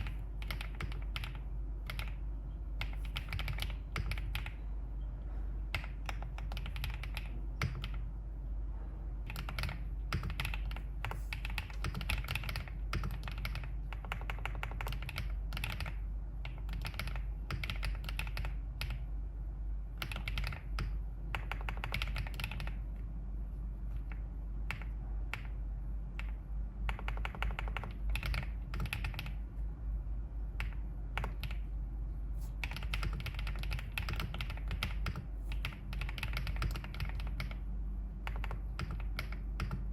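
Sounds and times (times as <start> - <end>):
mechanical keyboard typing: 0.0 - 2.2, 2.8 - 4.6, 5.7 - 8.1, 9.3 - 19.1, 20.0 - 22.8, 23.9 - 25.6, 26.2 - 29.4, 30.6 - 31.7, 32.5 - 37.6, 38.2 - 39.9
steady low hum: 0.0 - 39.9.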